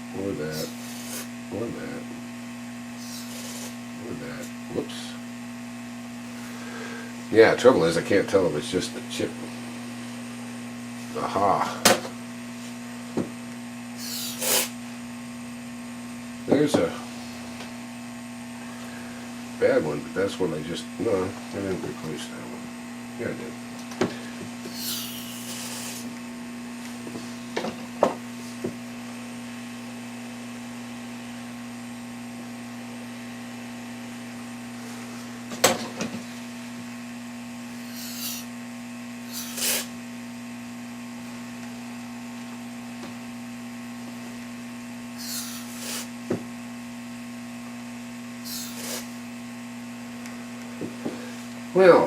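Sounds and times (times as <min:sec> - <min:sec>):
electrical hum: 0:00.0 - 0:52.0
freeze spray hissing: 0:14.0 - 0:14.8, 0:24.7 - 0:26.1, 0:37.8 - 0:38.5, 0:39.2 - 0:40.0, 0:45.2 - 0:46.2, 0:48.4 - 0:49.2.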